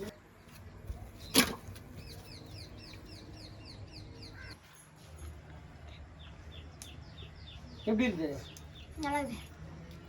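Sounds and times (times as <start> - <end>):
bird chirping: 1.1 - 4.8, 5.8 - 9.4.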